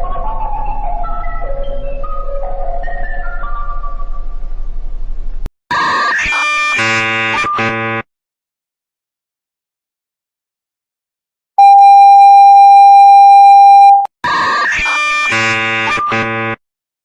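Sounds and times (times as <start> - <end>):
steady electronic alarm tone: 6.8 - 8.0, 11.6 - 14.1.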